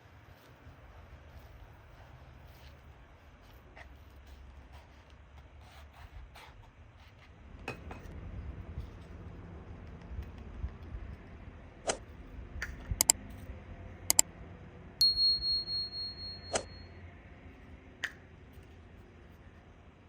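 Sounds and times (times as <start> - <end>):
high pulsing metallic ding: 15.0 - 16.9.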